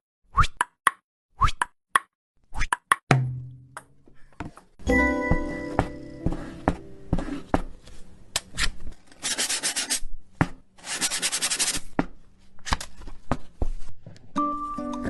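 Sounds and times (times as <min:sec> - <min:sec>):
rapid rubbing strokes: 0:10.9 - 0:11.8.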